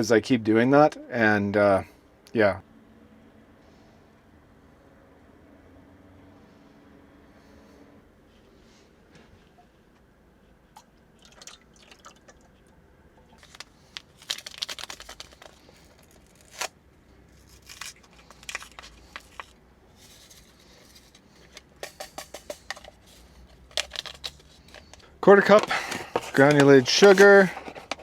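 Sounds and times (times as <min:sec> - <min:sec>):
utensils and dishes clinking: 0:21.8 - 0:23.0.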